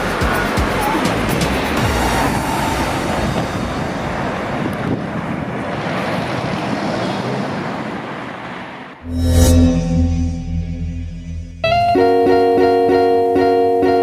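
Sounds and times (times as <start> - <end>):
music: 0.0 - 2.1, 11.6 - 14.0
traffic: 0.0 - 9.2
wind: 0.0 - 11.2.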